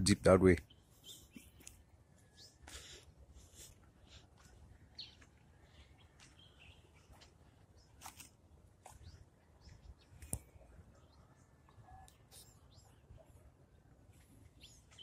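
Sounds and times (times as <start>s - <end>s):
faint bird chirps: 0.6s - 2.9s, 8.9s - 15.0s.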